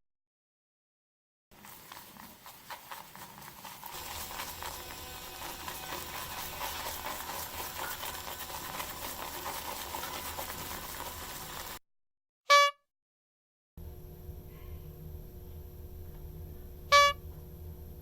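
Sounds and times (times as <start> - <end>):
crackling bubbling noise: 1.5 - 11.8
sharp pitched beep: 12.5 - 12.8, 16.9 - 17.2.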